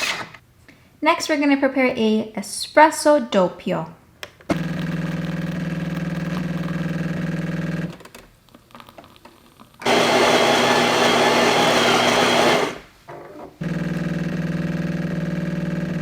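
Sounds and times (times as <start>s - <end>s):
grinder milling beans: 4.5s - 8.0s, 9.8s - 12.9s, 13.6s - 16.0s
machine hum: 4.5s - 8.0s, 9.8s - 16.0s.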